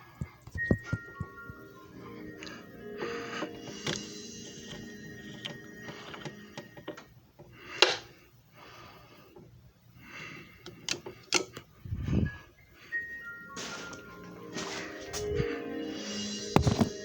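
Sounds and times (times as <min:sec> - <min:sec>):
hard objects clicking and tapping: 0:00.0 - 0:01.6, 0:16.6 - 0:16.9.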